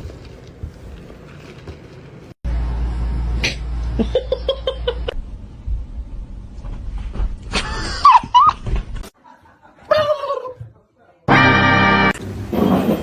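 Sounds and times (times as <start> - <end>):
person laughing: 4.0 - 5.2, 7.5 - 8.6.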